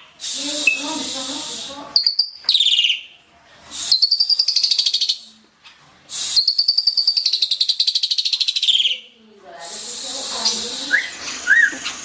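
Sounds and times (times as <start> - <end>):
starling singing buzzy notes: 0.2 - 2.4.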